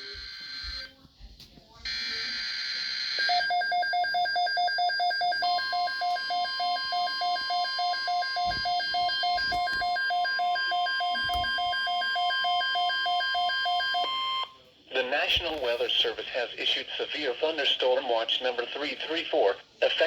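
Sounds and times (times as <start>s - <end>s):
steady alarm tone: 1.9s - 14.5s.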